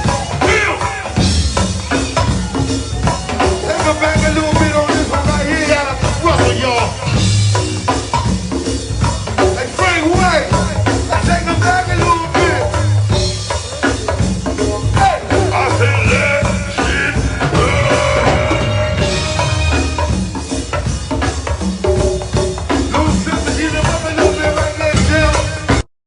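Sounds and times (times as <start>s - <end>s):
live band playing: 0.0s - 25.9s
person singing: 2.1s - 7.1s, 9.3s - 20.0s, 22.9s - 25.8s.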